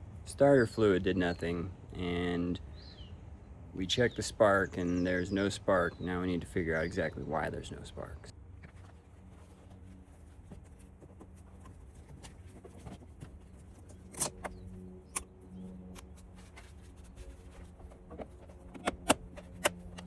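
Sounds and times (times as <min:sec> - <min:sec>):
faint steady hum: 0:00.0 - 0:20.0
tools and parts clicking and knocking: 0:17.8 - 0:20.0.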